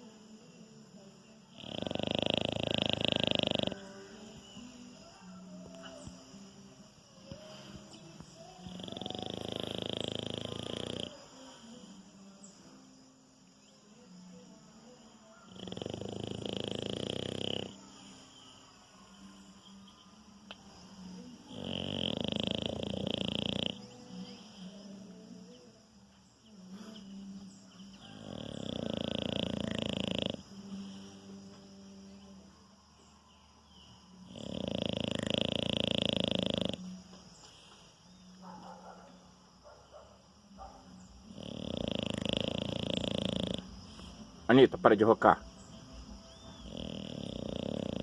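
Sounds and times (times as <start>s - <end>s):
dog snoring: 1.5s - 6.4s, 7.2s - 12.0s, 15.4s - 18.4s, 20.7s - 24.9s, 28.0s - 31.2s, 34.2s - 39.2s, 40.6s - 44.6s, 46.1s - 48.0s.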